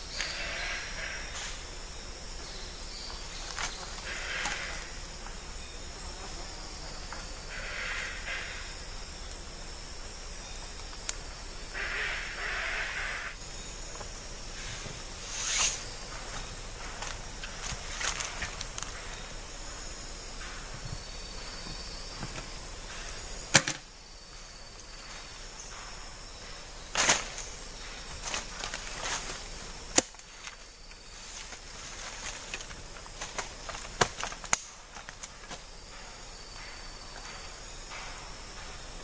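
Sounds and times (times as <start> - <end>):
rainforest ambience hiss: 0.0 - 39.0
thin insect buzz: 0.0 - 39.0.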